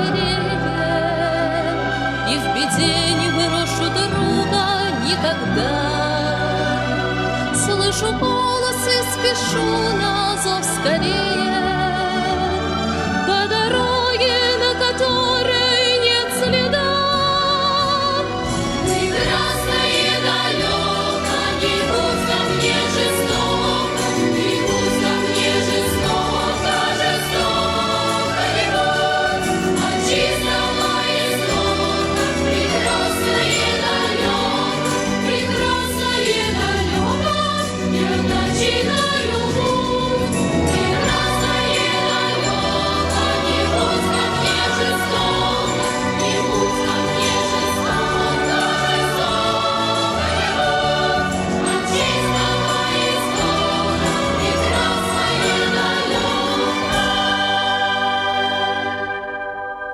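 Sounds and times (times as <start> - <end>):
choir singing: 0.0 - 59.9
instrumental backing with bass: 0.0 - 59.9.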